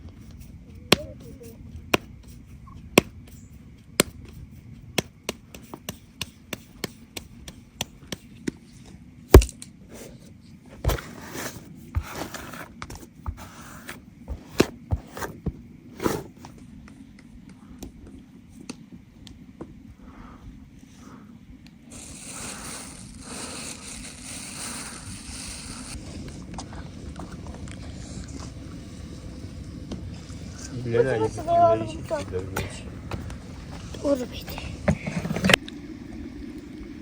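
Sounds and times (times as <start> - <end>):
scraping and rustling: 10.0 - 16.6.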